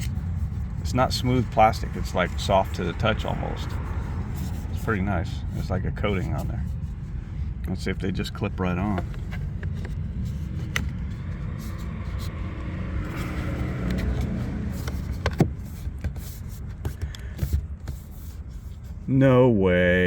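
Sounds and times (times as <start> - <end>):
steady low rumble: 0.0 - 16.8.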